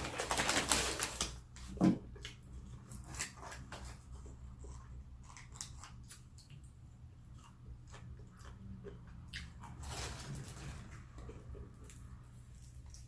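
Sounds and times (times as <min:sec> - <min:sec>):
packaging rustling: 0:00.0 - 0:01.4.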